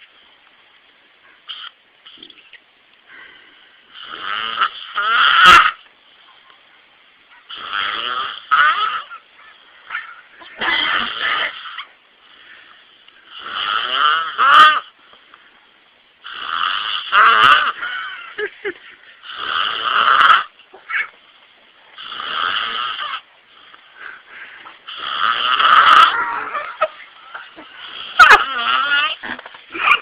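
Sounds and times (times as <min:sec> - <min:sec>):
man snoring: 0:04.0 - 0:05.8, 0:07.5 - 0:09.1, 0:10.9 - 0:11.7, 0:13.3 - 0:14.9, 0:16.2 - 0:17.9, 0:19.2 - 0:20.5, 0:22.0 - 0:23.2, 0:24.9 - 0:26.5, 0:27.8 - 0:29.2.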